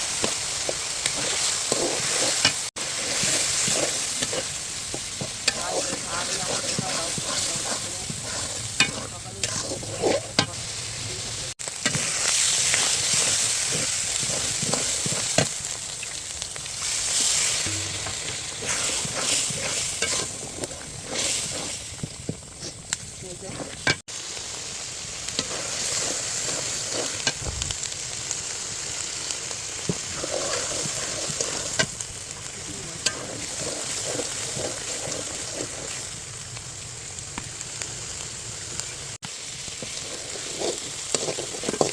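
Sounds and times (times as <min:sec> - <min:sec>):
food sizzling in hot oil: 0:00.0 - 0:41.9
spatula scraping a pan: 0:00.2 - 0:10.6, 0:11.8 - 0:15.7, 0:16.8 - 0:24.0, 0:25.3 - 0:27.4, 0:29.8 - 0:32.0, 0:32.9 - 0:36.1, 0:39.8 - 0:41.9.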